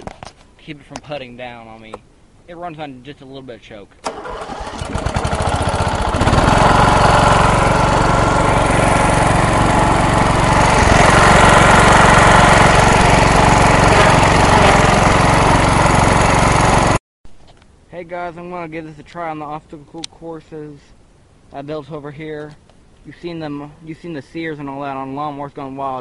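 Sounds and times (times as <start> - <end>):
riding mower engine running: 4.0 - 17.0.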